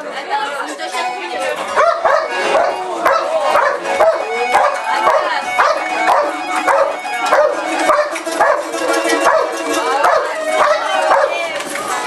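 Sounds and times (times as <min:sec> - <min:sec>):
dog barking: 0:01.8 - 0:11.4.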